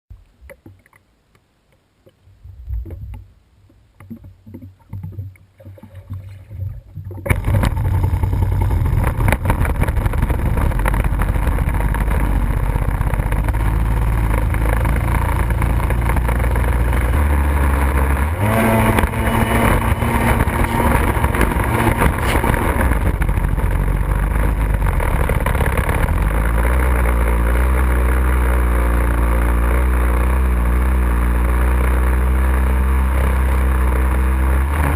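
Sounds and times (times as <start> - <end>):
wind and water noise: 0.1 - 26.3
water sloshing: 1.7 - 7.9
jet ski engine revving: 7.3 - 34.9.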